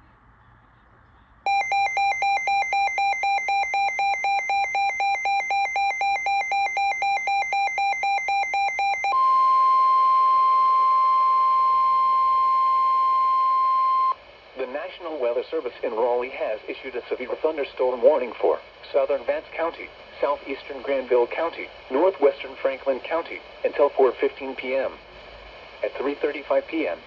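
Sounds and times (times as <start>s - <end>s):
steady alarm tone: 1.5s - 13.3s.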